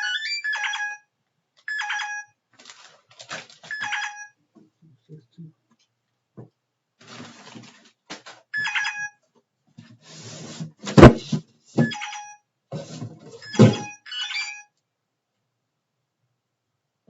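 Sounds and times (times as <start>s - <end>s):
packages thudding: 13.0s - 13.9s.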